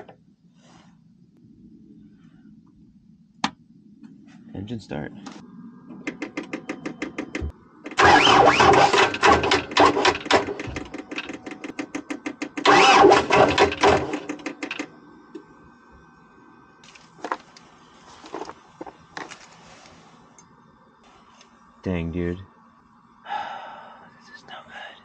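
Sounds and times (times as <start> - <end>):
engine starter cranking: 7.9 - 14.9.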